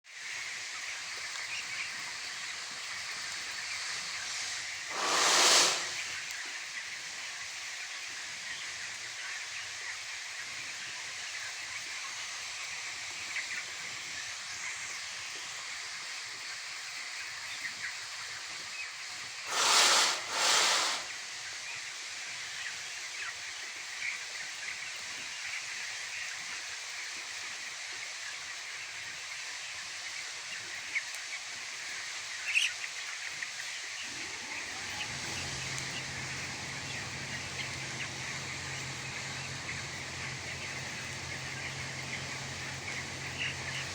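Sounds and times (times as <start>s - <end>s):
chicks cheeping: 0.2s - 43.9s
short hissing bursts: 3.0s - 6.4s, 19.4s - 21.4s, 34.1s - 43.9s
steady background noise: 34.0s - 43.9s.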